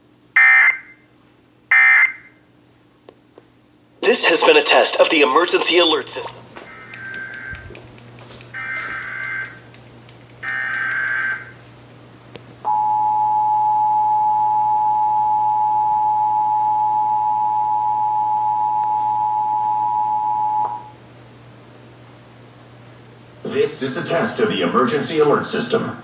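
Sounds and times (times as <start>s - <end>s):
digital data bursts: 8.6s - 9.8s, 10.4s - 11.5s
two-tone attention signal: 10.4s - 11.5s.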